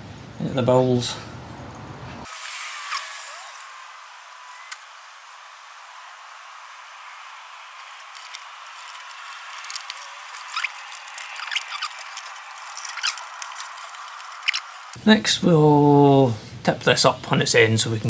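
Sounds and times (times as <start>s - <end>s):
steady hiss: 2.2s - 18.0s
small clicks and scrapes: 6.6s - 15.0s
brief squeaks: 8.2s - 14.8s.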